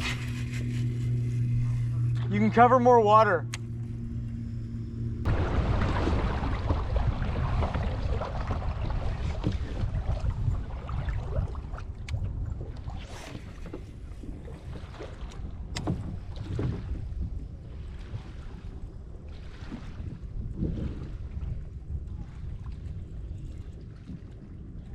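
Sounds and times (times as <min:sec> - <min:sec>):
wind rumbling on microphone: 0:00.0 - 0:24.9
water lapping against kayak: 0:05.2 - 0:24.9.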